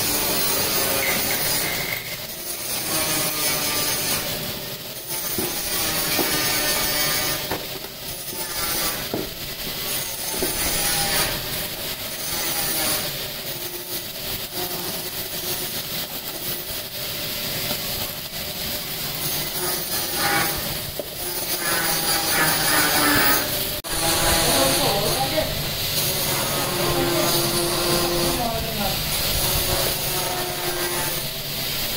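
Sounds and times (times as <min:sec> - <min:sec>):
buffing wheel grinding steel: 0:00.0 - 0:16.9, 0:18.9 - 0:31.7.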